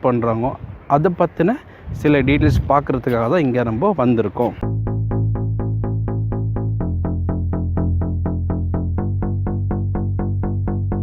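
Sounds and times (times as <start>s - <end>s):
electronic synth music: 4.6s - 11.0s.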